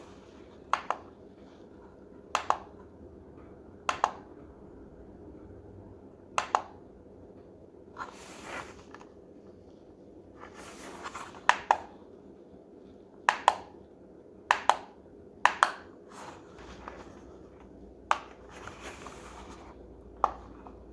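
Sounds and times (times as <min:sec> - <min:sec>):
alarm clock buttons clicking: 0:00.7 - 0:01.1, 0:02.3 - 0:02.8, 0:03.9 - 0:04.3, 0:06.4 - 0:06.8, 0:13.3 - 0:13.8, 0:14.5 - 0:15.9
soft rustles: 0:08.0 - 0:11.5, 0:16.1 - 0:20.9.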